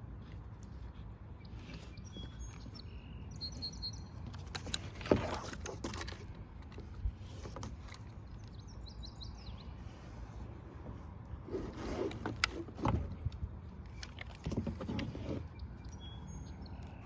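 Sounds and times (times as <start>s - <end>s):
birds chirping: 0.2s - 5.2s, 7.4s - 10.8s, 12.1s - 17.0s
low wind rumble: 6.1s - 17.0s.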